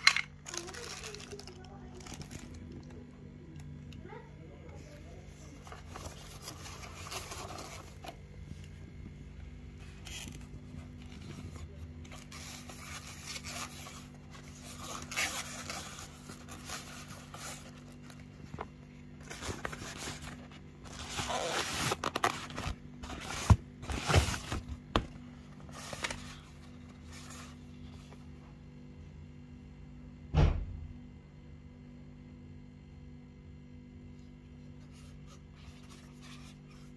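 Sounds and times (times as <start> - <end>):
packaging rustling and scraping: 0.0 - 3.0, 4.7 - 28.3, 34.5 - 36.9.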